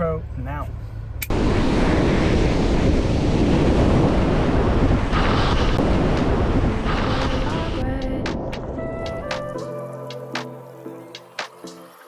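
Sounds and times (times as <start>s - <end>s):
wind buffeting microphone: 1.3s - 9.6s
ocean surf: 1.3s - 12.0s.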